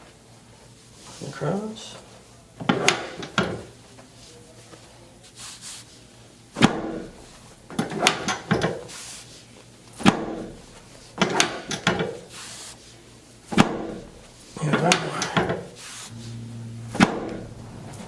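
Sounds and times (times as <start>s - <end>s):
treatment table knocking and clunking: 7.7s - 8.8s, 10.0s - 12.2s, 13.5s - 15.7s, 16.9s - 17.4s.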